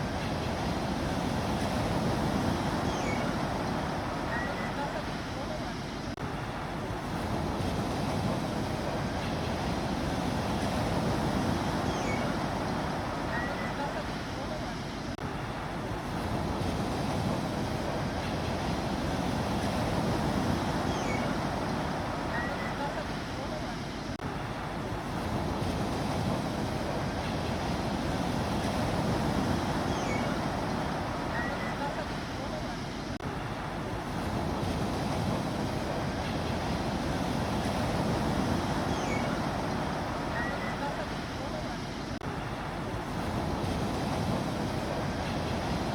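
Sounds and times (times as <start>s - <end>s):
sea waves washing in: 0.0s - 45.9s
wind on microphone: 23.9s - 32.4s, 33.2s - 45.9s.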